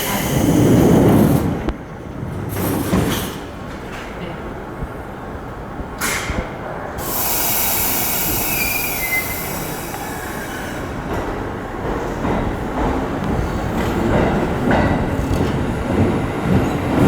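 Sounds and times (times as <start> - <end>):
train wheels squealing on rails: 0.0 - 1.5, 7.0 - 15.7
thin whistling tone: 8.4 - 9.7.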